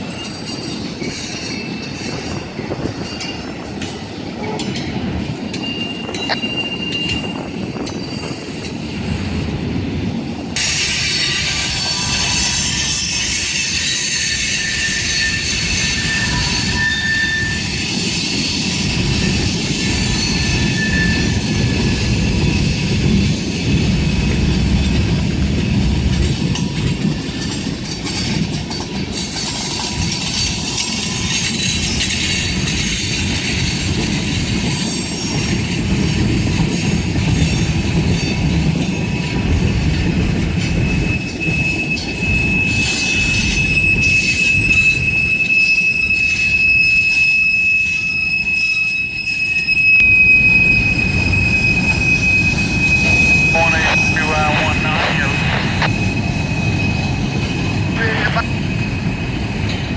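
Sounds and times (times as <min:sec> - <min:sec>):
freight train wheels rumbling on rail: 0:00.0 - 0:59.9
high-pitched wheel squeal: 0:11.8 - 0:17.9, 0:19.9 - 0:22.7.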